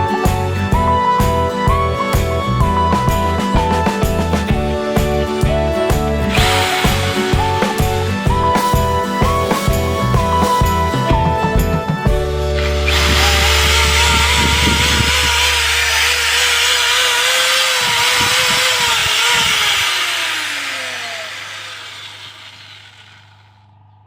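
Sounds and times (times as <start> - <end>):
music: 0.0 - 16.7
machine whine with wavering pitch: 0.7 - 24.0
loud hiss: 6.4 - 8.2.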